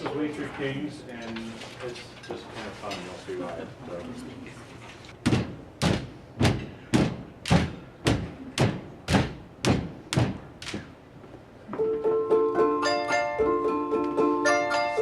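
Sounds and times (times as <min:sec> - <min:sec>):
dull thumps: 0:05.2 - 0:11.0
handbells ringing chords: 0:14.4 - 0:15.0.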